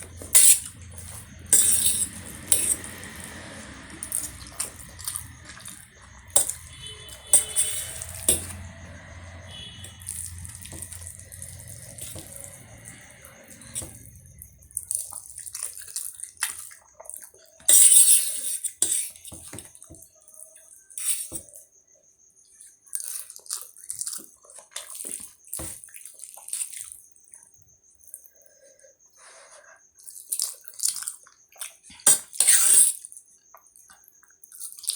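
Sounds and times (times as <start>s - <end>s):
person slurping and chewing noodles: 0.0s - 8.6s, 9.5s - 17.4s.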